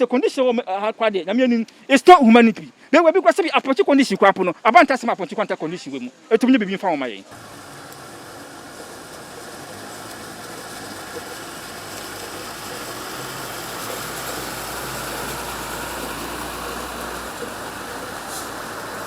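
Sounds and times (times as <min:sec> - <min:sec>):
street noise: 0:04.4 - 0:19.0
vehicle engine running: 0:07.3 - 0:19.0.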